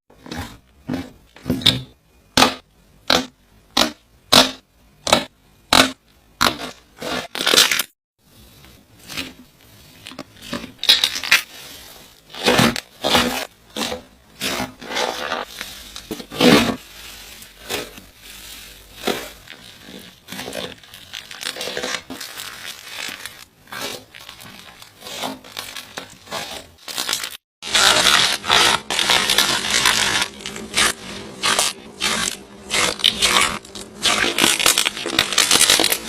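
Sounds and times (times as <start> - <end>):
slime squishing: 9.0 - 36.0.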